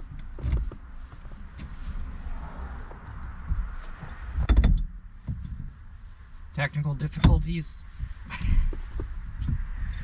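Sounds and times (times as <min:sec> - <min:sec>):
steering wheel knocking and rattling: 0:00.0 - 0:01.8, 0:02.9 - 0:05.8.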